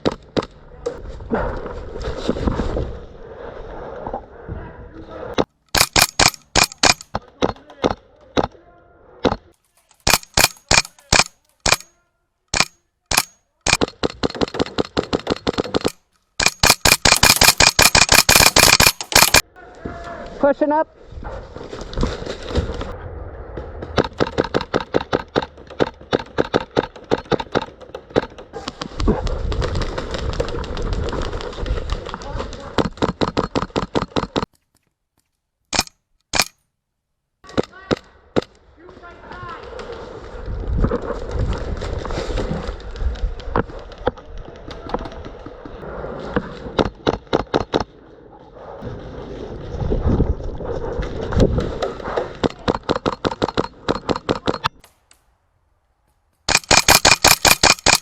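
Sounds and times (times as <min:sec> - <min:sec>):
airsoft gunfire: 0:12.6 - 0:19.4, 0:56.5 - 0:58.0.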